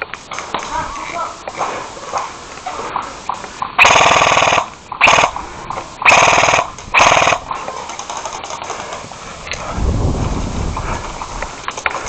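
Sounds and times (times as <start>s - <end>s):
airsoft rifle full auto bursts: 3.8s - 5.4s, 6.0s - 8.7s.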